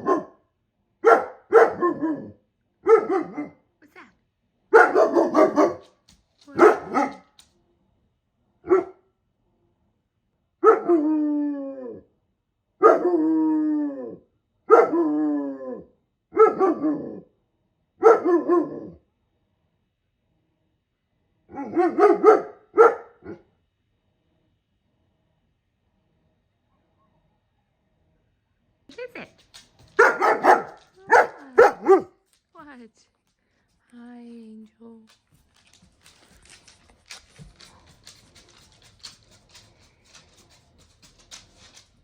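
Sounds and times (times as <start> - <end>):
dog barking: 0.0 - 0.4, 1.0 - 3.6, 4.7 - 7.4, 8.6 - 9.0, 10.6 - 11.0, 12.8 - 13.1, 14.7 - 15.0, 16.3 - 17.2, 18.0 - 18.9, 21.5 - 23.4, 29.9 - 32.2.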